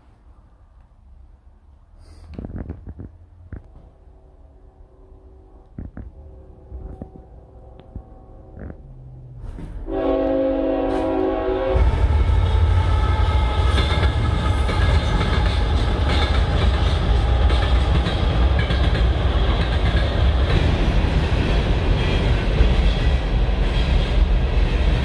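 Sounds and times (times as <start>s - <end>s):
train passing rumble and rattle: 0.0s - 25.0s
train horn: 4.1s - 8.9s, 9.8s - 18.5s.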